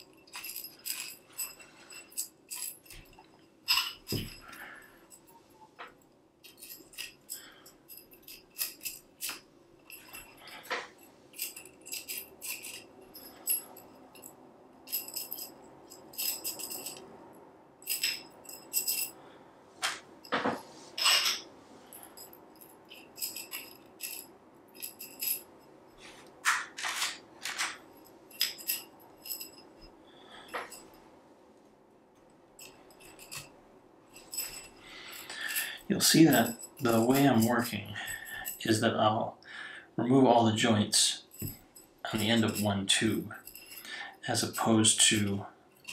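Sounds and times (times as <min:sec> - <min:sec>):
tubes clicking and rattling: 0:00.0 - 0:17.1, 0:17.8 - 0:19.2, 0:19.8 - 0:31.0, 0:34.1 - 0:39.1.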